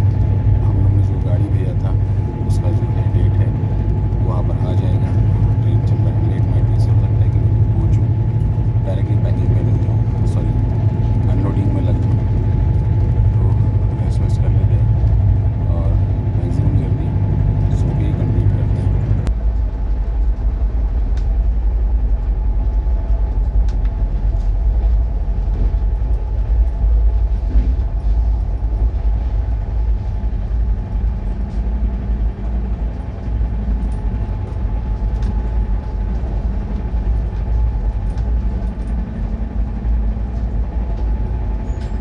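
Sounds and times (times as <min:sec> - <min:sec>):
train rumble: 0:00.0 - 0:42.0
faint clicks and rattles: 0:23.1 - 0:42.0.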